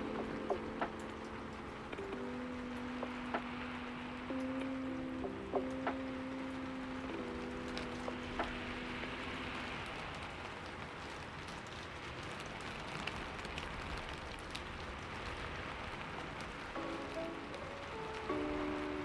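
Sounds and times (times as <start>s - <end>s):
piano chord: 0.0s - 10.0s, 16.8s - 19.0s
fire crackling: 0.0s - 19.0s.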